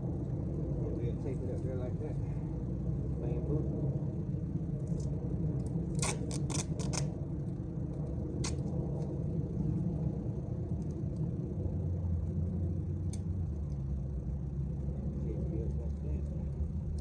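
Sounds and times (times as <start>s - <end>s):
steady low rumble: 0.0s - 17.0s
duct tape tearing off roll: 5.9s - 7.1s.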